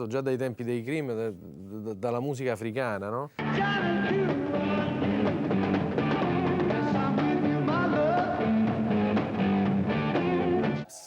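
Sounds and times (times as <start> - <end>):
rock band music: 3.4 - 10.9.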